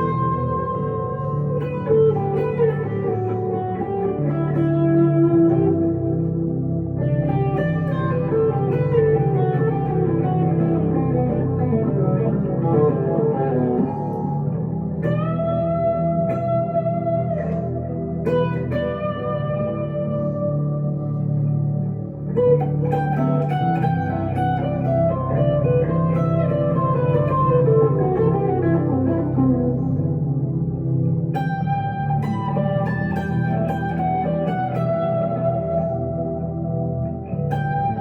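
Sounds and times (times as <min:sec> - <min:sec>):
electric guitar melody: 0:00.0 - 0:38.0.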